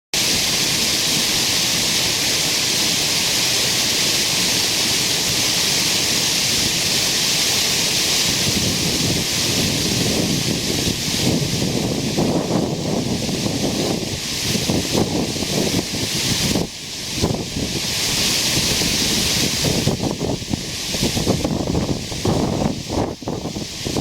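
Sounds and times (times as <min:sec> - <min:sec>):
waterfall rushing: 0:00.2 - 0:24.0
wind buffeting microphone: 0:08.2 - 0:24.0.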